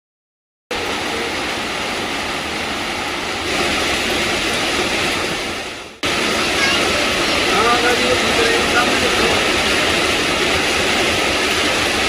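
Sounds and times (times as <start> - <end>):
heavy rain hissing: 0.7 - 12.0.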